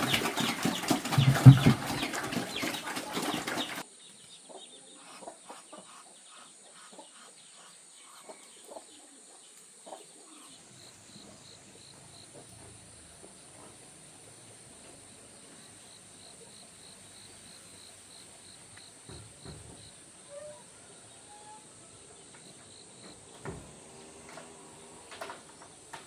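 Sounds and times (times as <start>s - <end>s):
chickens clucking: 0.0s - 13.9s.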